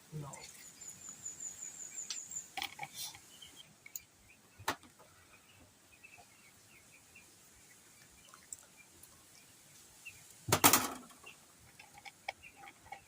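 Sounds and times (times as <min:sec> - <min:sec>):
faint bird chirps: 0:00.1 - 0:10.4.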